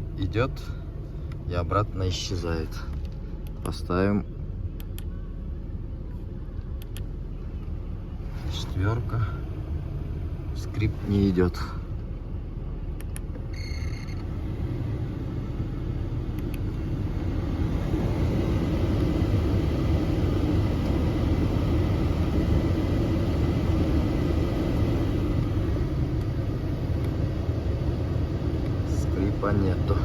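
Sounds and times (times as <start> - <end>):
heater blower fan running: 6.2 - 30.0
short beep: 13.5 - 14.2.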